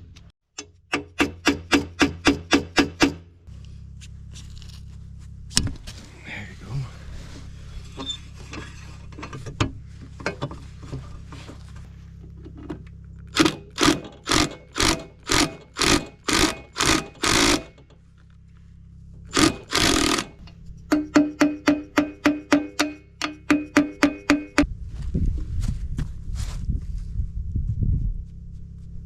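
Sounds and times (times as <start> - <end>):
ratchet wrench clicking: 13.4 - 17.9, 19.3 - 24.6.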